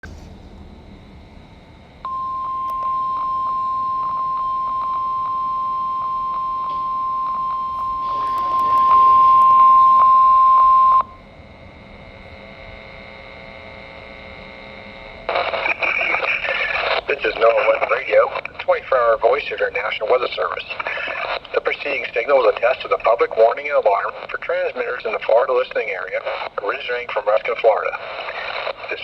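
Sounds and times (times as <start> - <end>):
high warning alarm beep: 2.0 - 11.3
faint radio hiss: 2.5 - 11.2, 12.0 - 29.0
small clicks: 2.7 - 3.0, 7.8 - 9.5.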